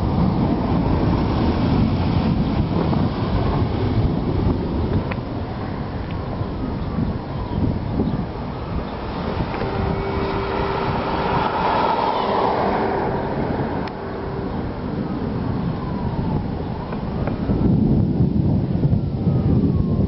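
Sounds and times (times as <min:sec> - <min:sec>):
vehicle passing by: 0:00.0 - 0:17.2
steady tone: 0:08.2 - 0:16.6.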